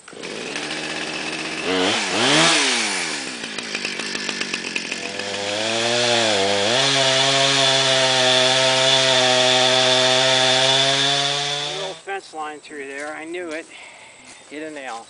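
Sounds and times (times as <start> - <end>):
chainsaw engine revving and idling: 0.0 - 12.1.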